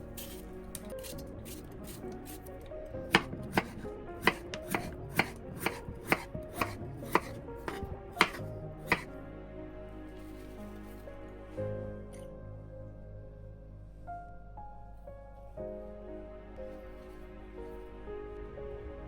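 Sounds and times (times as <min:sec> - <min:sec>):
knife chopping on cutting board: 0:03.1 - 0:09.1.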